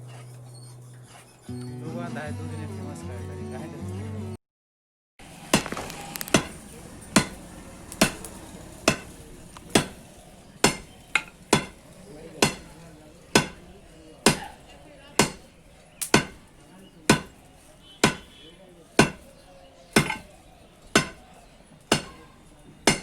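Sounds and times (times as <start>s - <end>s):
hammer striking metal: 5.5s - 14.6s, 15.2s - 16.5s, 17.1s - 18.4s, 19.0s - 19.3s, 20.0s - 20.3s, 20.9s - 21.3s, 21.9s - 23.0s.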